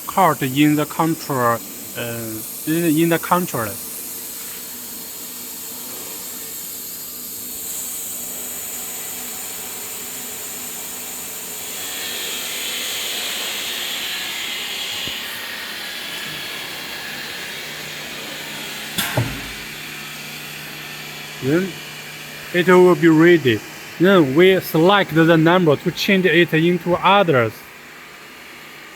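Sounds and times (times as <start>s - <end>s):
sharp click: 19.0s - 19.8s.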